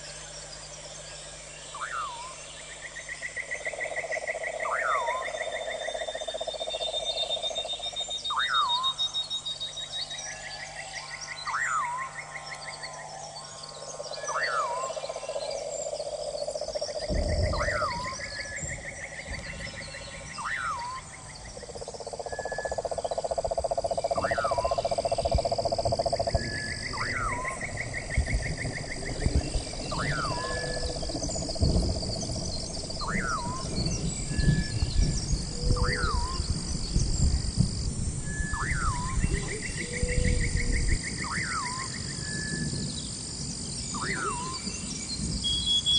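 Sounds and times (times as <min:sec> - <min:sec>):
frogs calling in pulsing trills: 0:00.0 - 0:45.9
low rushing noise with crackles: 0:24.9 - 0:38.3.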